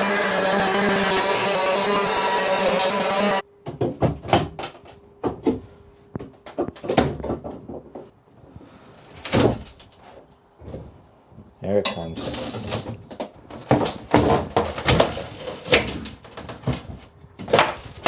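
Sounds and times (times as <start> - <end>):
demolition knocks clunks and scrapes: 12.2 - 18.0.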